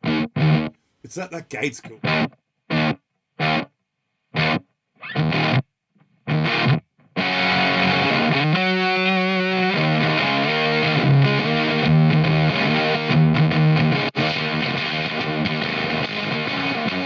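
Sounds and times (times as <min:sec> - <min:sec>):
fuzzed electric guitar playing: 0:06.3 - 0:17.0.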